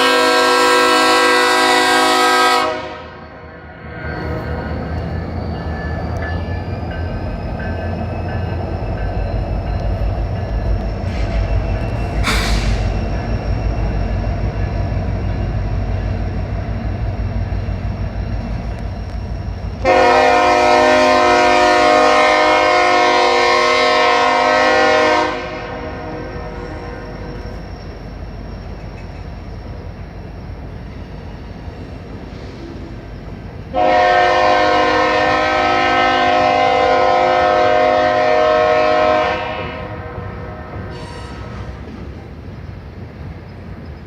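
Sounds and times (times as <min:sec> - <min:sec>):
train horn blast: 0:00.0 - 0:03.4, 0:19.8 - 0:27.3, 0:33.7 - 0:41.8
diesel locomotives rumbling: 0:00.0 - 0:44.0.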